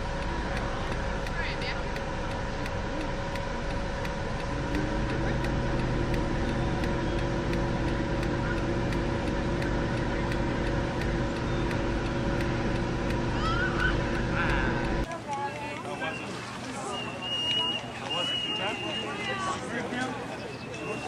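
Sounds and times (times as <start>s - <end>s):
motor humming: 0.0s - 15.1s.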